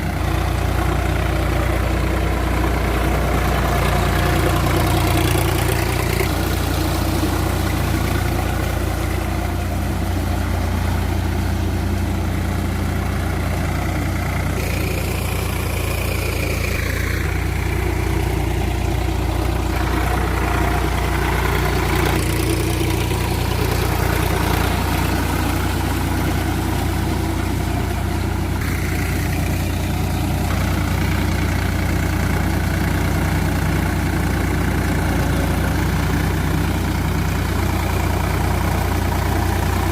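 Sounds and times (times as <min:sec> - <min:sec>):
tractor diesel engine droning: 0:00.0 - 0:39.9
falling whine: 0:14.6 - 0:31.0.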